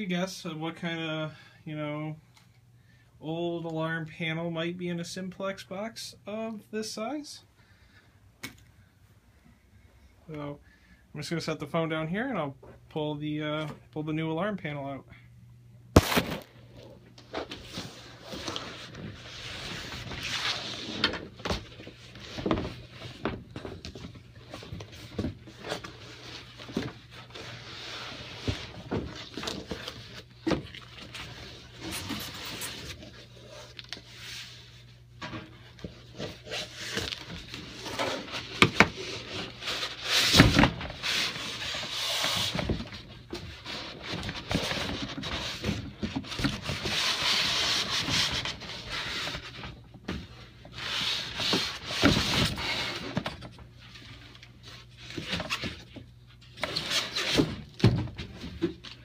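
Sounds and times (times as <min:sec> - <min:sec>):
cardboard and packing rustling: 0:16.0 - 0:59.0.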